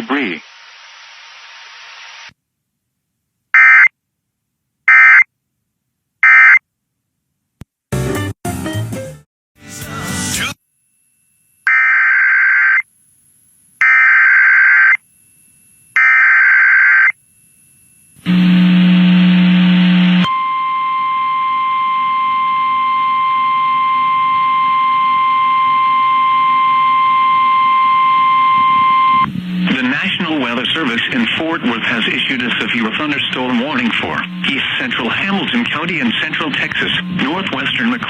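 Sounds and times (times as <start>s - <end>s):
steady warning alarm tone: 10.9s - 38.0s
low buzz: 17.2s - 21.0s, 22.7s - 30.0s, 33.3s - 35.6s.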